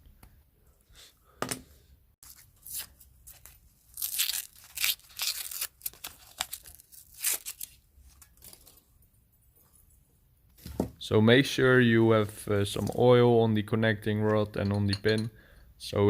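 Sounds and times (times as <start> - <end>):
crinkling and tearing: 2.2 - 8.9.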